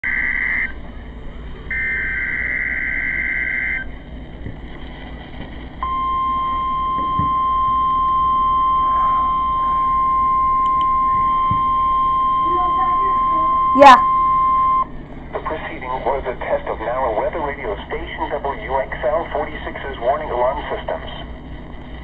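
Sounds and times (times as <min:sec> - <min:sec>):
steady warning alarm tone: 0:00.0 - 0:00.8, 0:01.7 - 0:03.9, 0:05.8 - 0:15.0
warbling data tones: 0:01.7 - 0:03.9, 0:05.8 - 0:15.5
radio static: 0:15.3 - 0:21.4.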